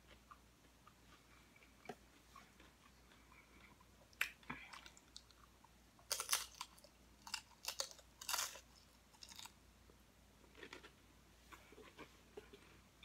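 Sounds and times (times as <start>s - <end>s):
crunching tortilla chips: 6.0s - 9.6s.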